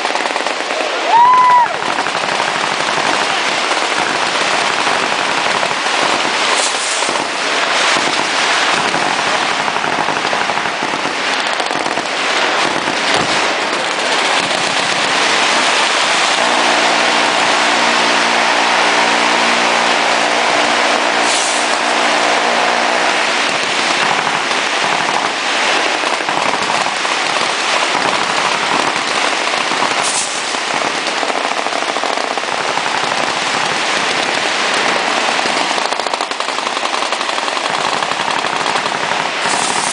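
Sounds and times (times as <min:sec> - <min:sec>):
automatic gunfire: 0:00.0 - 0:00.9, 0:34.8 - 0:39.9.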